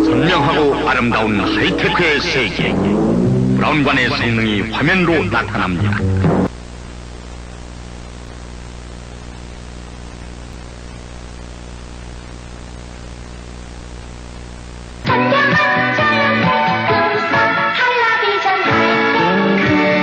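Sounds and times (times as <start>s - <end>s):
music: 0.0s - 6.5s, 15.1s - 20.0s
low mains hum: 0.0s - 15.1s
static hiss: 0.0s - 20.0s.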